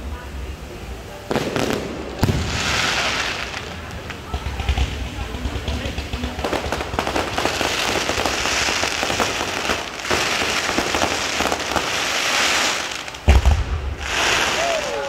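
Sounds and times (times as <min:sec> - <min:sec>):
fireworks crackling: 0:00.0 - 0:15.0
deep firework boom: 0:01.4 - 0:03.2, 0:13.2 - 0:14.4.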